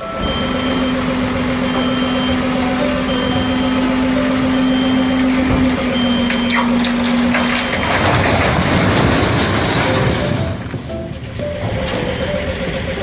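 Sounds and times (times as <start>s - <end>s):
reversing alarm beeping: 0.0s - 9.0s, 9.8s - 13.0s
diesel engine running: 0.0s - 13.0s.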